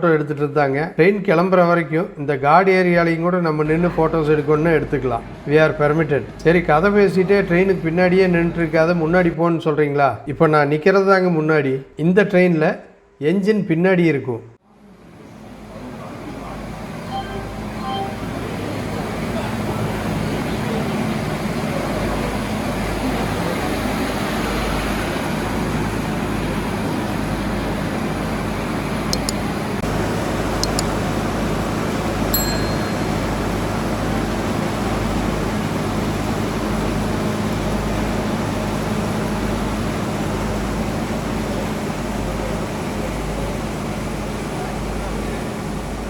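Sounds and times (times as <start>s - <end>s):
mechanical hum: 0.0s - 46.0s
sharp clicks: 29.1s - 29.4s, 30.6s - 30.9s.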